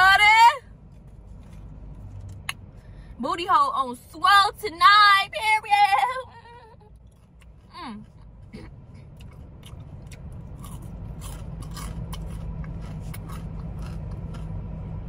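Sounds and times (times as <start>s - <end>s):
steady low rumble: 0.0s - 15.0s
person chewing and crunching food: 6.7s - 14.9s.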